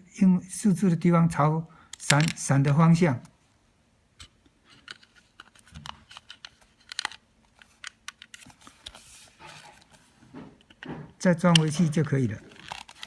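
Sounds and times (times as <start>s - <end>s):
plastic parts clicking and rattling: 1.9s - 2.8s, 4.2s - 13.0s.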